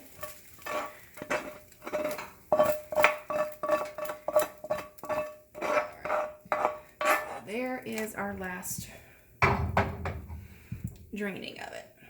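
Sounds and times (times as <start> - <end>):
metal utensil scraping skillet: 0.0 - 8.2.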